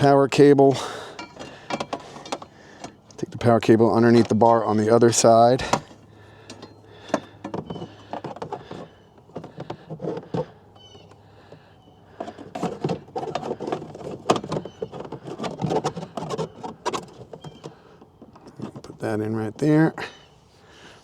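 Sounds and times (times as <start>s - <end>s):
cable rustling and scraping: 1.2s - 19.7s.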